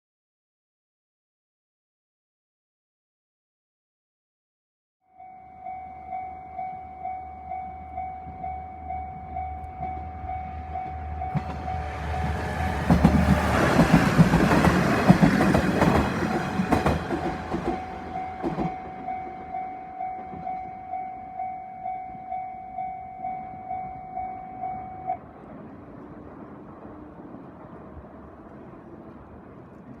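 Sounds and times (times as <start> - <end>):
level-crossing alarm bell: 5.1 - 12.8, 17.6 - 25.2
train rumbling past: 5.2 - 30.0
train wheel clatter: 10.8 - 20.8.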